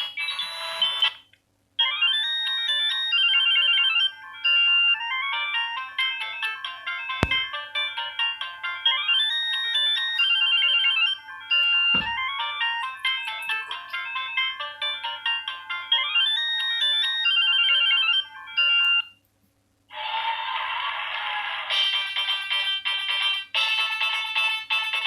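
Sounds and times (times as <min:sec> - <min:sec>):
electronic phone ringtone melody: 0:01.8 - 0:07.0, 0:08.6 - 0:19.1.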